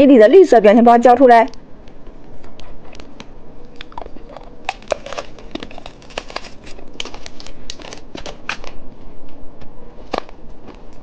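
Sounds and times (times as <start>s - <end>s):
plastic packaging crinkling: 3.0s - 8.8s.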